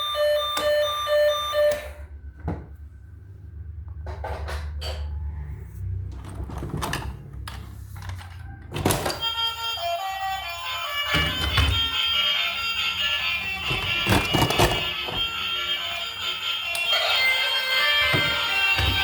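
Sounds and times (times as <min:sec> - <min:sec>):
toy two-tone siren: 0:00.0 - 0:02.1, 0:09.0 - 0:19.0.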